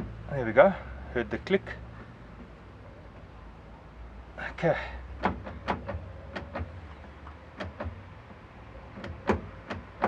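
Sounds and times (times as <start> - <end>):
tools clicking and knocking on metal: 5.2 - 10.0.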